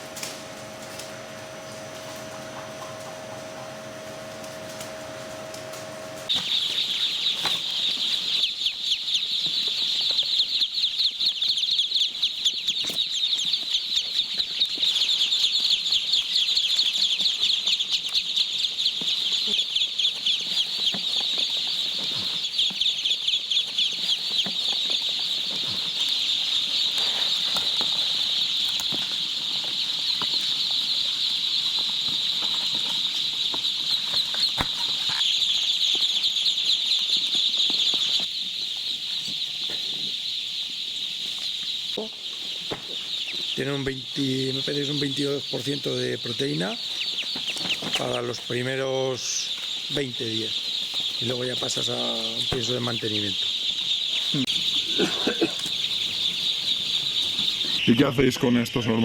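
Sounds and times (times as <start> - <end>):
ducklings peeping: 0.0 - 59.0.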